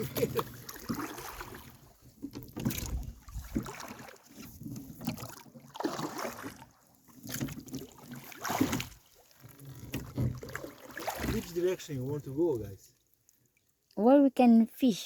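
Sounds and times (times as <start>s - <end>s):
water swishing around a boat: 0.0s - 14.1s.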